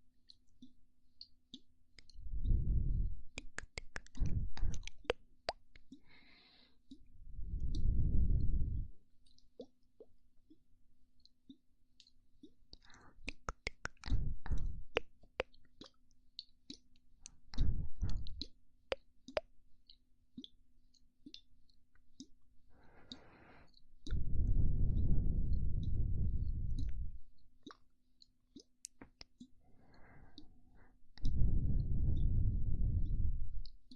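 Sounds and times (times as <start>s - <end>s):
wet lip and tongue clicks: 0.3s - 10.6s, 11.2s - 33.9s
breath blowing onto microphone: 2.2s - 3.2s, 4.1s - 5.0s, 7.3s - 9.0s, 17.6s - 18.4s, 24.1s - 27.2s, 31.2s - 33.6s.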